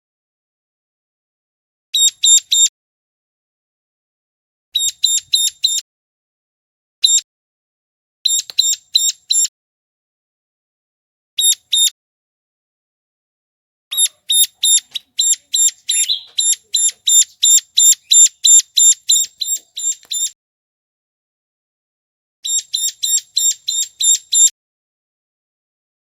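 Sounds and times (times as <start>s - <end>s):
bird calling high sharp notes: 13.9s - 20.4s, 22.5s - 24.5s.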